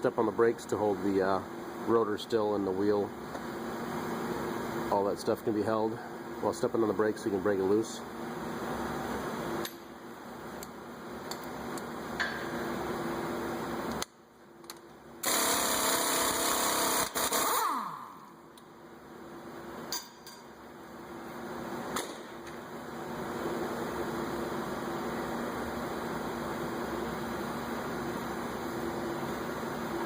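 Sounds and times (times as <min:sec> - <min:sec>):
impact wrench running: 0:15.2 - 0:18.0
motor winding down whine: 0:15.2 - 0:18.3.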